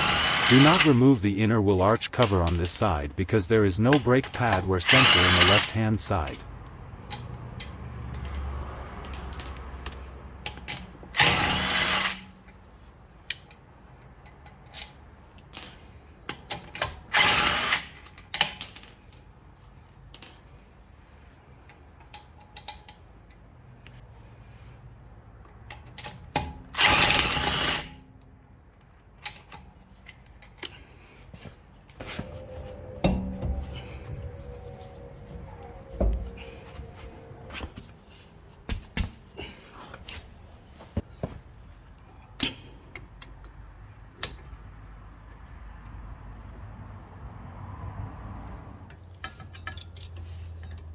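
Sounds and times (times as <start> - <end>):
handheld power tool running: 0.0 - 1.0, 4.9 - 5.8, 32.1 - 37.5.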